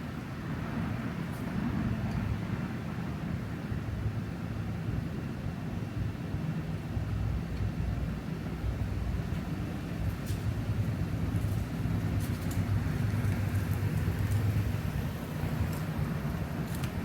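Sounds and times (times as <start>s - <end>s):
vehicle engine rumbling: 0.0s - 17.0s
faint light ticks: 7.5s - 7.7s.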